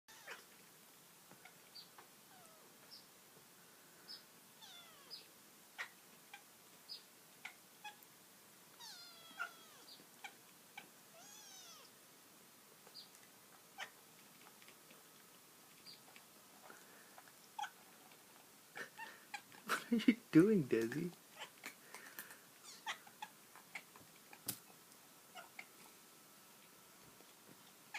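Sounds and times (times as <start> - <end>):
cat chirping meows: 0.1 - 0.5, 4.6 - 5.9, 8.8 - 10.0, 11.1 - 11.9, 22.6 - 23.2.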